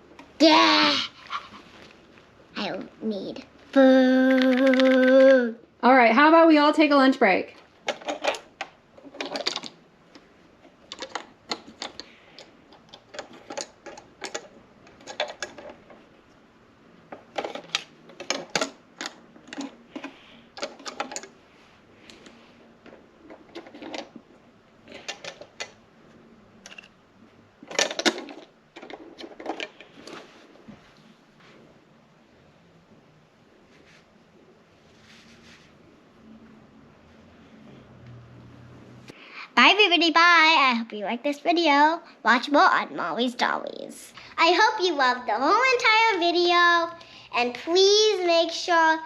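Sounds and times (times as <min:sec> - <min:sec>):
dolls clicking on hard surface: 0:04.2 - 0:05.5.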